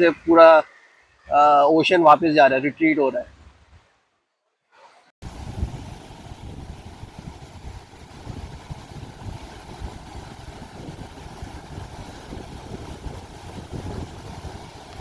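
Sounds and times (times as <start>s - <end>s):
surf washing on beach: 5.2s - 15.0s
wind rumbling on microphone: 5.2s - 15.0s.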